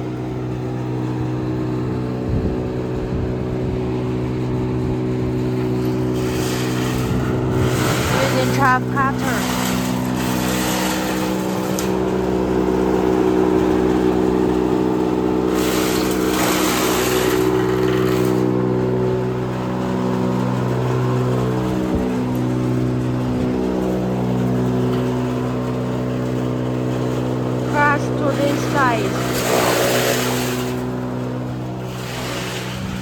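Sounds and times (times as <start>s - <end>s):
chop cutter machine drone: 0.0s - 33.0s.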